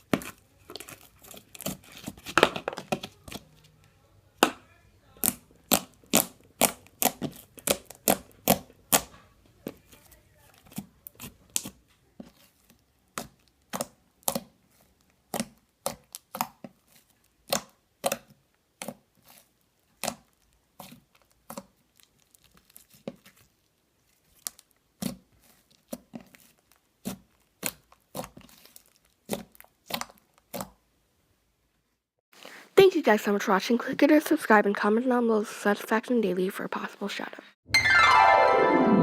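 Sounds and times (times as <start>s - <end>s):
slime squished by hand popping: 5.2s - 9.1s.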